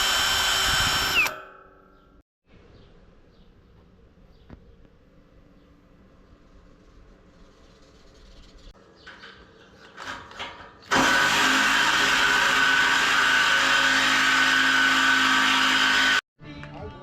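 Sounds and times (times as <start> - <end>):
power tool motor whining: 0.0 - 1.3, 10.9 - 16.2.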